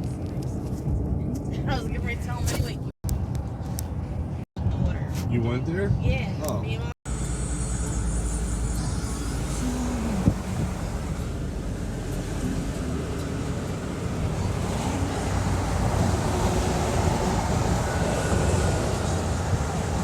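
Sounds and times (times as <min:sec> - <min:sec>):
vehicle rumble: 0:00.0 - 0:20.0
wind buffeting microphone: 0:13.0 - 0:20.0.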